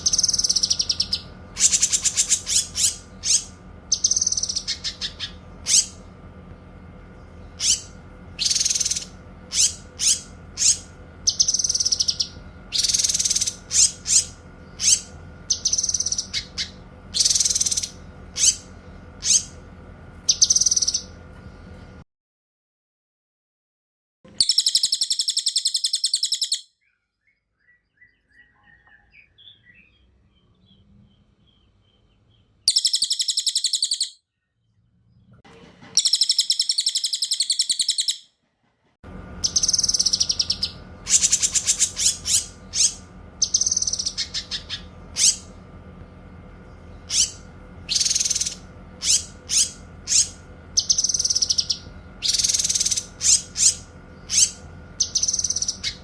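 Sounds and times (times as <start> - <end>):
songbird rolling trills: 0.0 - 6.0, 7.4 - 19.5, 39.4 - 45.6, 46.6 - 56.0
songbird sharp chirping phrases: 0.0 - 6.2, 7.0 - 19.6, 20.2 - 21.1, 24.3 - 35.3, 36.0 - 38.2, 39.4 - 56.0
background hum: 0.0 - 22.0, 24.3 - 56.0.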